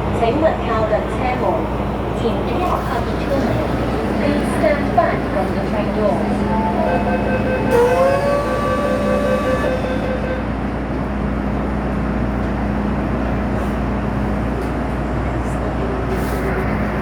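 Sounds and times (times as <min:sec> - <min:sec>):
train rumbling along track: 0:00.0 - 0:17.0
traction motor whine: 0:03.9 - 0:11.2.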